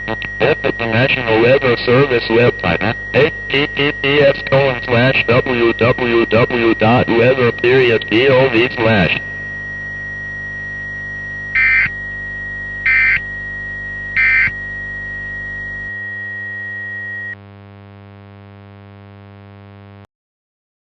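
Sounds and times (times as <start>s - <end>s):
low electronic buzzing drone: 0.0s - 18.0s
steady high tone: 0.4s - 9.4s.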